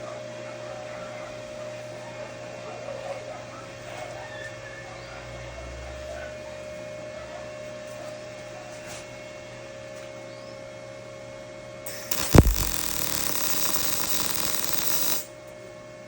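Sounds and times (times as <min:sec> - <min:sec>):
electrical hum: 0:11.9 - 0:15.3.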